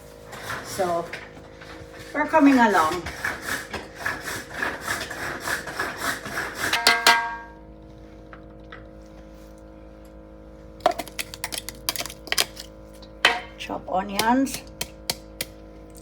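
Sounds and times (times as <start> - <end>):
rhythmic kitchen utensil strikes: 6.7 - 7.6
ringing metallic clang: 6.8 - 7.6.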